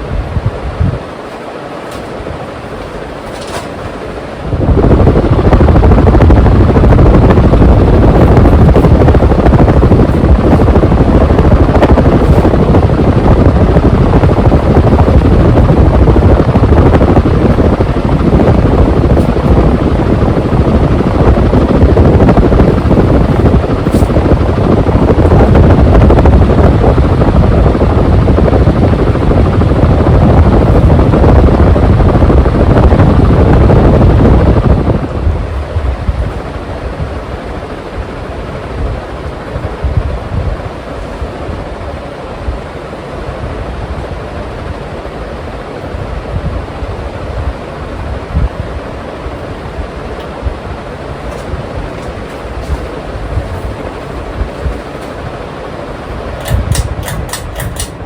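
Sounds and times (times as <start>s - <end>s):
air buffeting microphone: 0.0s - 58.0s
ceiling fan rushing air: 0.0s - 58.0s.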